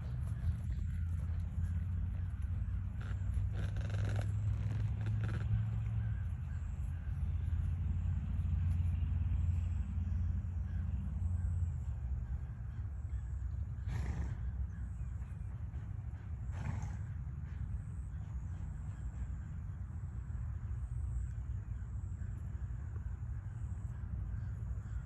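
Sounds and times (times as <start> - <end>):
low rumble: 0.0 - 16.4.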